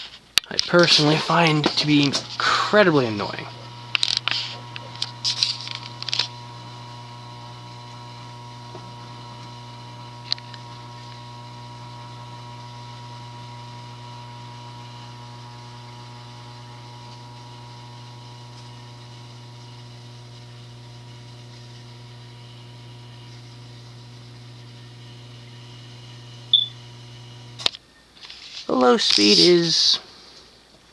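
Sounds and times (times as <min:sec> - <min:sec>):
ceiling fan humming: 0:00.5 - 0:18.9.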